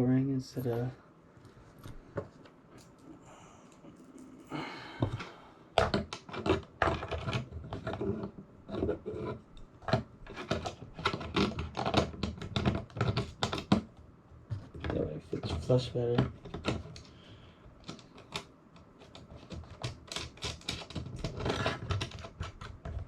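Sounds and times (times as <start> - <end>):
clicks and clatter of small parts: 2.7 - 3.1, 17.8 - 23.0.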